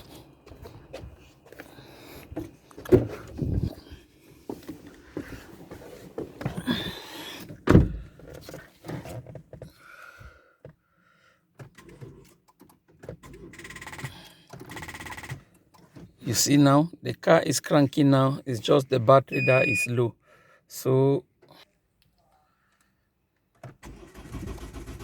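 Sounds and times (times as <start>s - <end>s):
car door thunk: 7.6s - 8.1s
faint short tones: 19.3s - 19.9s.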